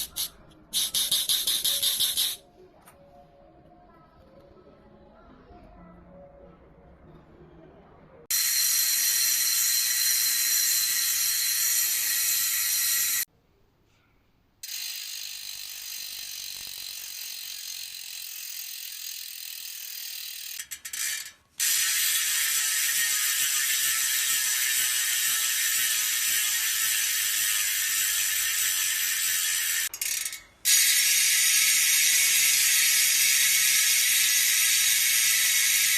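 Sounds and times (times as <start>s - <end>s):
bike hub freewheel ticking: 0.0s - 2.4s, 8.3s - 13.3s, 14.6s - 35.9s.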